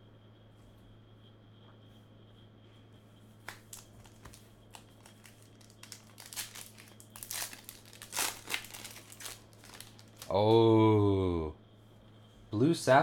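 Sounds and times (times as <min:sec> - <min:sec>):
wrapper crinkling and tearing: 0:03.6 - 0:10.4.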